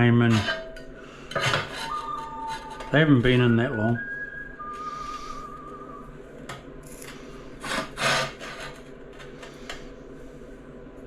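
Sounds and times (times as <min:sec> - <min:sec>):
scraping on a hard surface: 0:01.3 - 0:02.0.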